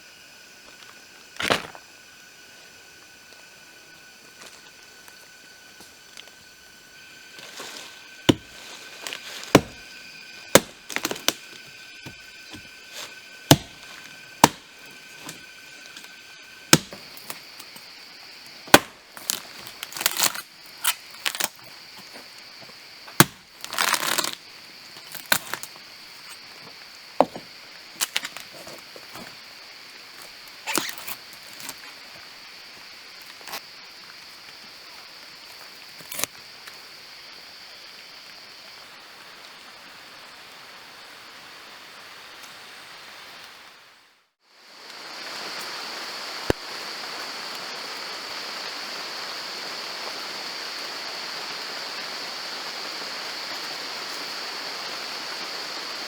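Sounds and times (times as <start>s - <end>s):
wood cracking and splintering: 7.4s - 16.1s, 16.7s - 17.3s, 18.7s - 21.6s, 23.2s - 24.4s
axe chopping wood: 7.5s - 15.4s, 16.7s - 17.0s, 18.7s - 19.0s, 23.2s - 24.3s.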